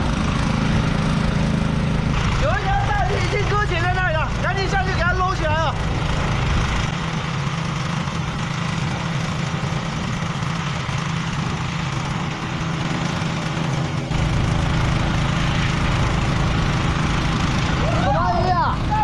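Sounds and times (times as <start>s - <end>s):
water pump engines humming: 0.0s - 19.0s.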